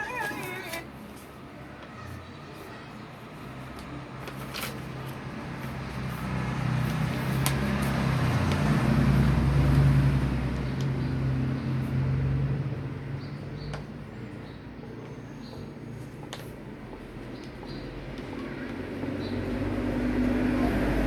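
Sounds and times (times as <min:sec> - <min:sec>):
vehicle engine passing by: 0:05.4 - 0:13.3, 0:18.8 - 0:21.0.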